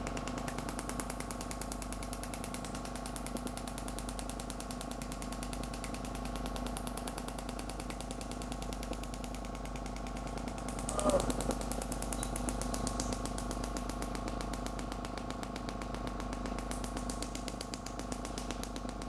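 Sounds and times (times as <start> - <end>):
rapid even tapping: 9.2 - 19.0
steady machine hum: 10.3 - 18.3.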